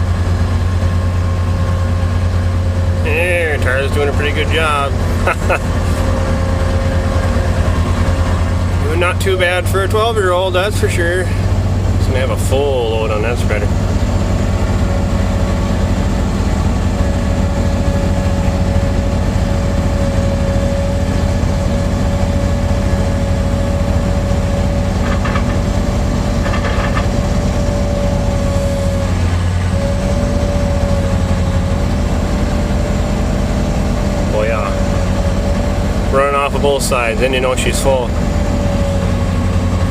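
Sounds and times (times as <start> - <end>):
farm machinery engine drone: 0.0 - 39.9
steady machine whine: 0.0 - 39.9.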